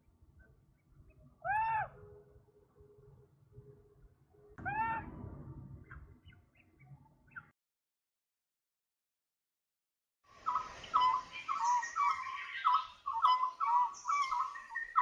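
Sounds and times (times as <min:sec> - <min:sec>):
bird calls rising and falling: 0:10.4 - 0:15.0
faint bird chirps: 0:10.4 - 0:15.0.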